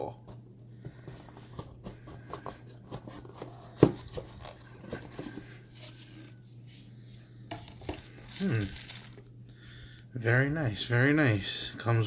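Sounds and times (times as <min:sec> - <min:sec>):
steady low hum: 0:00.0 - 0:12.0
cardboard rustling and tapping: 0:00.3 - 0:05.5.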